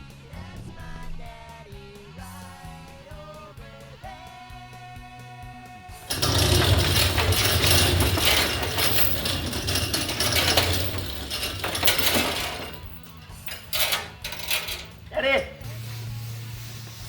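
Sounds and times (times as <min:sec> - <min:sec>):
loud mechanical clattering: 0:06.0 - 0:15.6.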